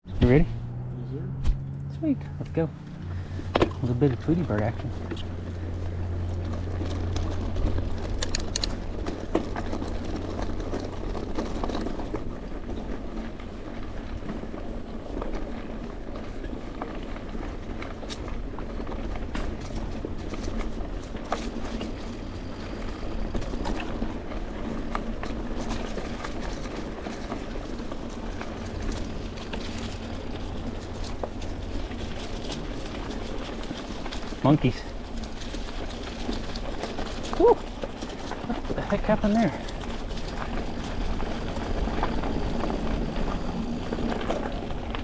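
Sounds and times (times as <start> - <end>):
bike tyre noise and rattling: 1.4 - 45.0
wind rumbling on microphone: 4.7 - 45.0.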